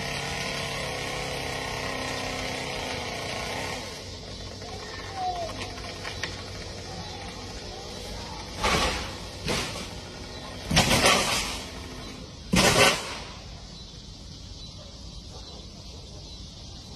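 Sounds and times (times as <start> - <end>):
loud crashing bursts: 8.5 - 13.5.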